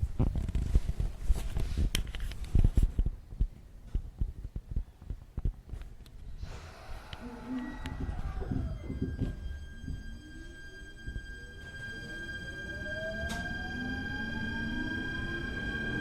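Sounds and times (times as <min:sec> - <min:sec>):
faint whining tones: 0:06.2 - 0:16.0.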